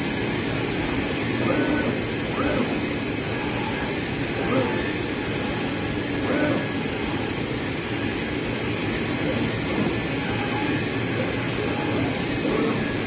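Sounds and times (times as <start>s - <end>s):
fabric cutting machine whirring: 0.0s - 13.0s.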